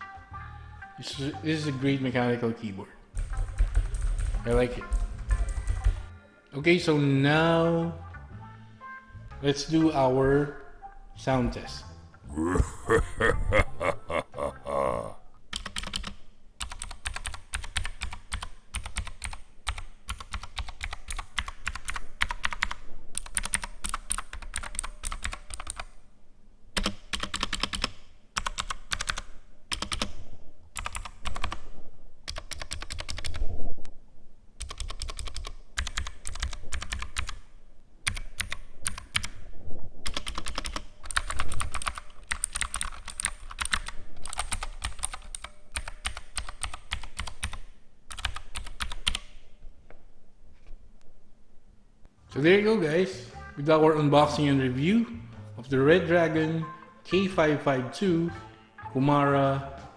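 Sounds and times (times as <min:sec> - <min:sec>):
clicky keyboard typing: 0:15.5 - 0:25.9, 0:26.8 - 0:30.2, 0:30.8 - 0:31.7, 0:32.3 - 0:33.4, 0:34.6 - 0:39.4, 0:40.0 - 0:49.4.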